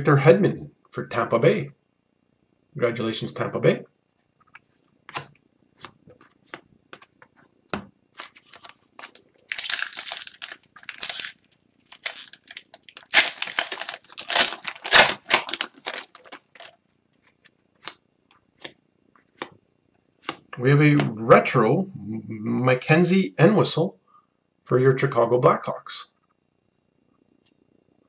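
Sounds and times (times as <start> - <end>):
foil wrapper tearing and crinkling: 8.2 - 17.4.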